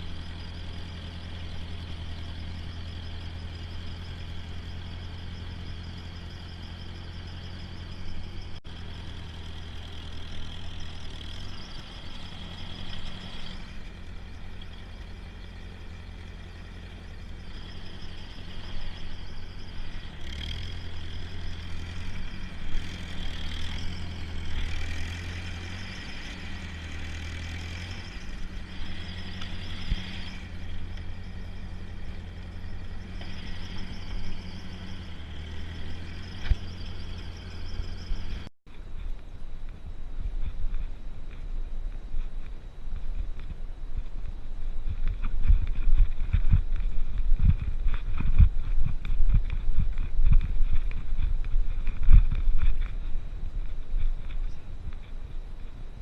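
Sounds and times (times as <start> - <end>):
high whine: 0.0 - 56.0
tractor engine running: 0.0 - 56.0.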